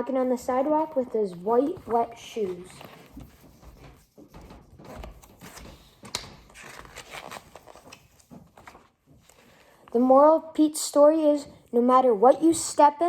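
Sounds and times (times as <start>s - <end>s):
book pages rustling: 0.1s - 10.0s.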